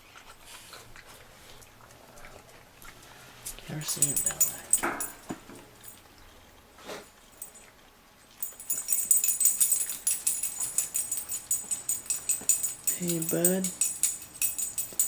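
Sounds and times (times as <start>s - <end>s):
metal dog tags jingling: 3.7s - 6.0s, 7.4s - 7.7s, 8.4s - 15.0s.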